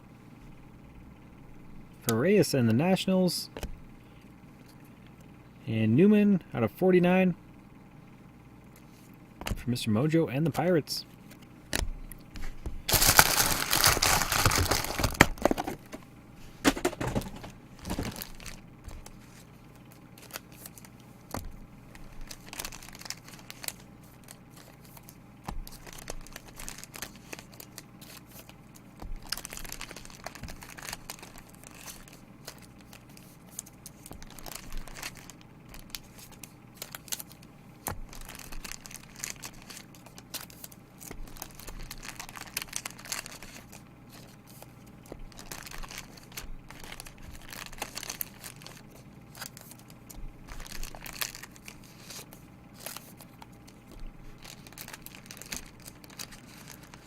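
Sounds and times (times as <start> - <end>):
plastic wrappers crinkling: 12.4 - 16.0, 16.7 - 57.0.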